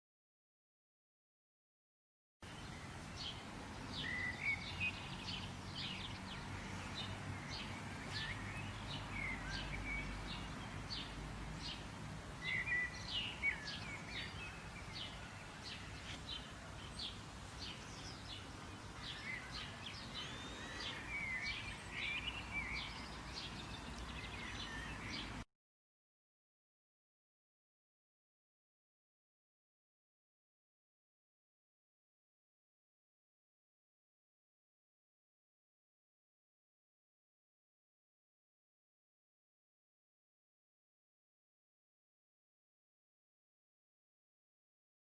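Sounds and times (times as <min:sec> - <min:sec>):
songbirds chirping: 0:02.4 - 0:25.5.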